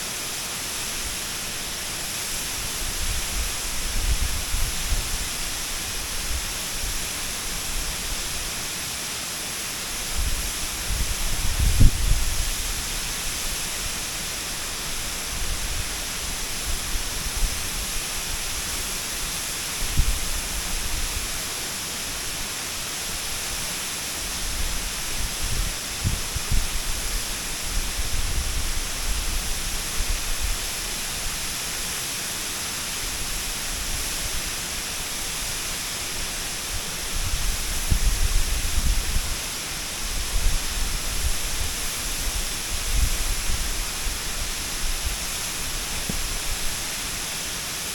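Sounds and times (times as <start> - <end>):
waterfall rushing: 12.4 - 47.9.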